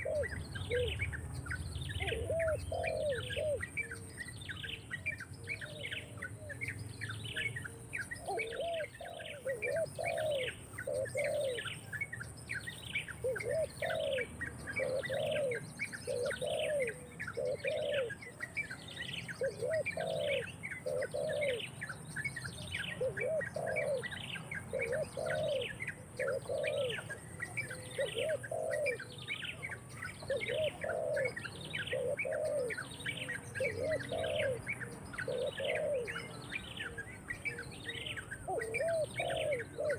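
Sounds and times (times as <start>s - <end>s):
low cooing bird notes: 0.0s - 12.3s, 13.0s - 39.9s.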